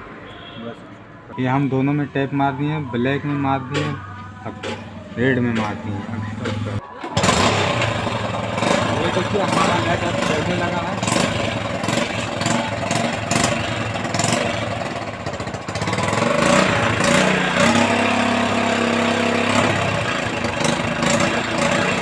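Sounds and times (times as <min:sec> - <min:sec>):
motorcycle engine idling: 0:04.8 - 0:22.0.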